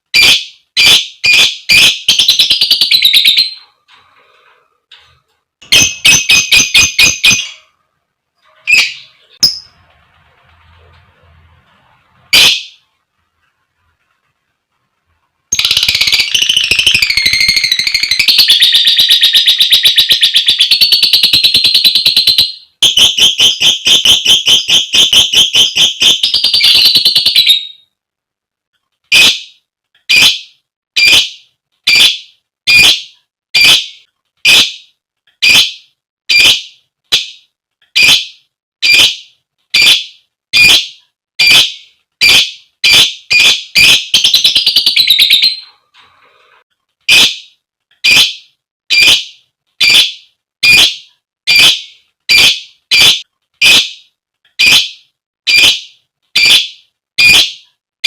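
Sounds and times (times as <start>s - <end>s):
lovebird piercing calls: 15.5s - 27.8s, 39.8s - 45.7s.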